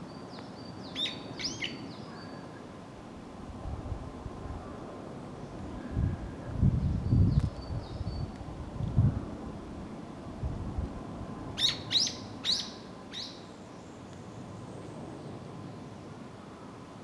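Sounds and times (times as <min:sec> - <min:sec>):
woodpecker sharp high calls: 0:00.9 - 0:01.8, 0:11.6 - 0:13.4.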